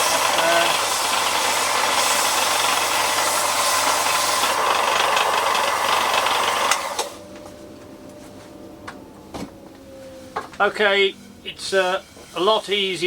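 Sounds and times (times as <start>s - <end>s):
electric sander on timber: 0.0s - 7.5s
dust extractor hum: 0.0s - 13.0s.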